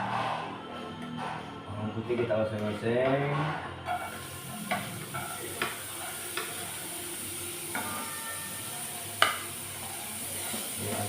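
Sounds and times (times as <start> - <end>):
garlic sizzling in hot oil: 3.9 - 11.0.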